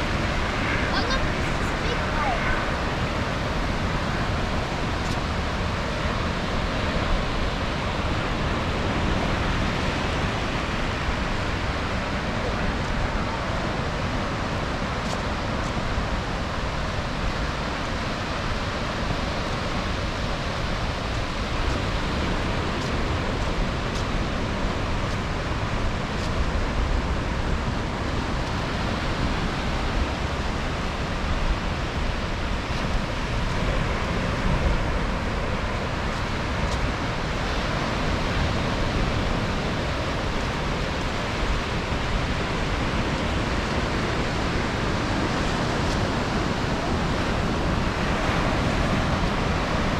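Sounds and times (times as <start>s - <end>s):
ocean waves breaking on beach: 0.0s - 49.9s.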